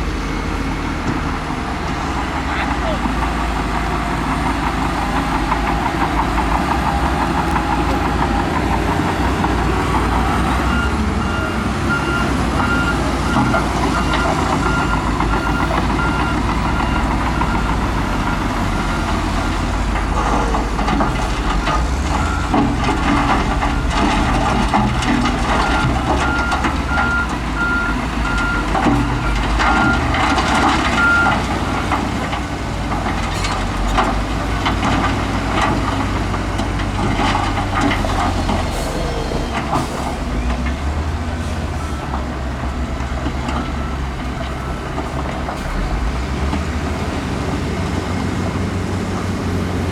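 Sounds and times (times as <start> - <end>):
diesel earthmoving machinery running: 0.0 - 49.9
reversing alarm beeping: 10.3 - 30.1, 31.0 - 31.4, 38.7 - 42.2.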